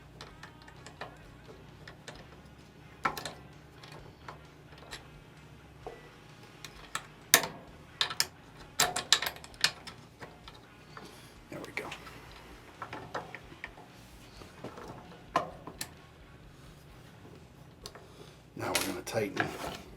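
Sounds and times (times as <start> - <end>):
metallic clicks of rifle parts: 0.0 - 5.2, 5.8 - 16.1.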